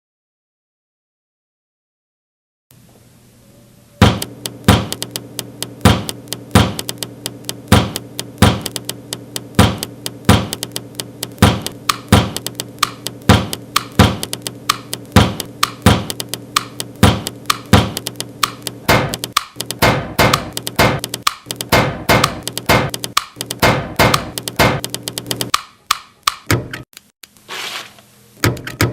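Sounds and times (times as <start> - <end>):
steady low hum: 3.2 - 25.5
instrumental hip-hop beat: 4.0 - 26.5.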